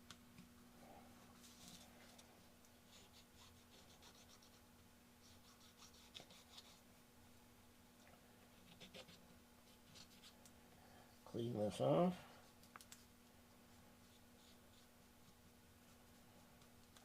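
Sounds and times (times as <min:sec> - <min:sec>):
cotton swab scratching and rubbing: 0:02.9 - 0:04.6, 0:05.2 - 0:06.8, 0:08.6 - 0:10.4, 0:14.0 - 0:16.3.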